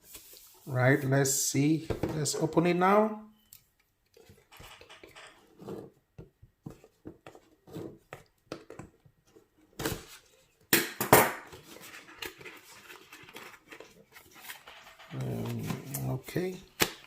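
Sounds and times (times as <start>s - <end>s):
packaging rustling and scraping: 11.5s - 16.6s.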